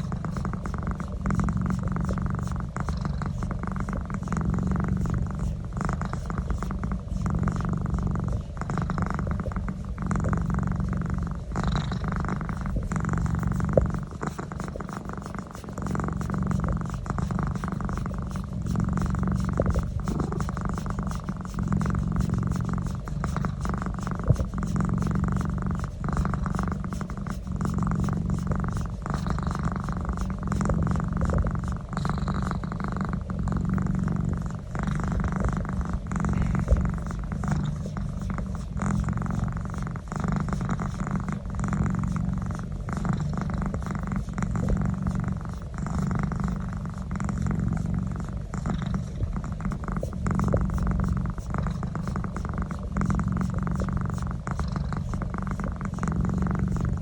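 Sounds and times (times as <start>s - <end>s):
cat purring: 0.0s - 57.0s.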